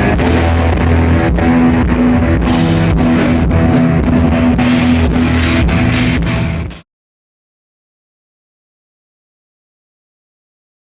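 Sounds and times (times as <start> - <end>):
live rock band playing: 0.0 - 6.8.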